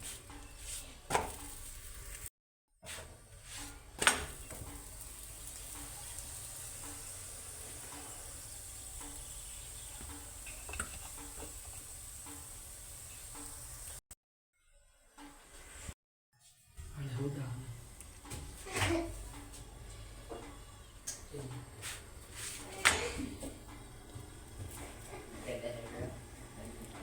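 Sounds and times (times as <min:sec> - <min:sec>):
food sizzling in a pan: 0:01.2 - 0:02.3, 0:03.4 - 0:14.0.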